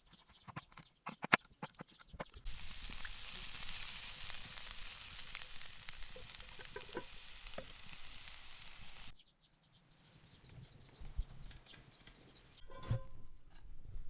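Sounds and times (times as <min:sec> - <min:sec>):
sausage sizzling in a pan: 0:02.5 - 0:09.2.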